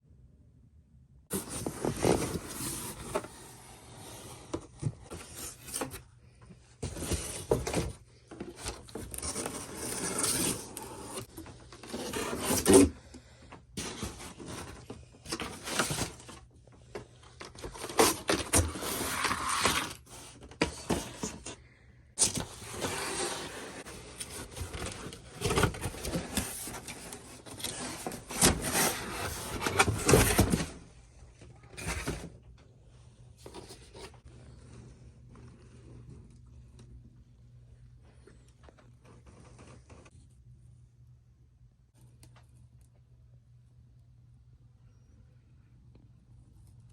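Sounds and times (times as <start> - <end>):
cardboard and wrapping scraping: 1.3 - 6.0, 6.8 - 13.0, 13.8 - 16.5, 17.4 - 21.6, 22.2 - 30.9.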